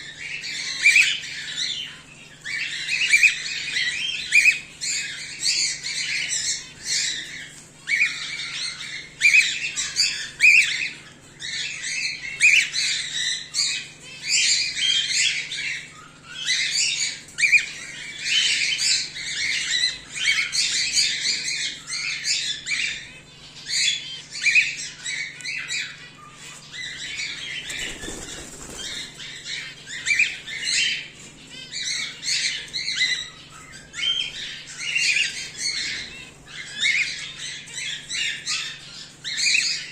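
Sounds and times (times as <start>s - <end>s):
cockatiels chirping and squawking: 0.0s - 39.9s.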